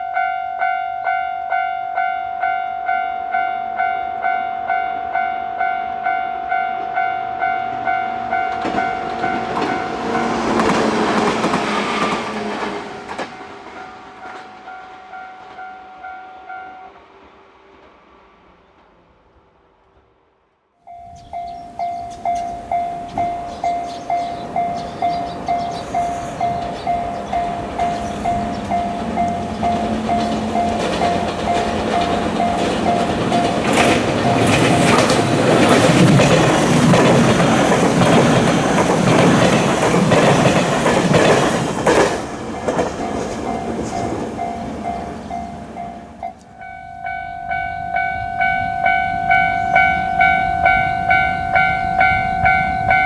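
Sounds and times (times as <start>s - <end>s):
brighter crossing bell ringing: 0.0s - 10.5s, 20.9s - 41.8s, 42.5s - 53.0s
train wheels clattering: 8.4s - 15.6s, 21.3s - 46.5s
level crossing bell ringing: 20.9s - 35.4s, 43.1s - 53.0s.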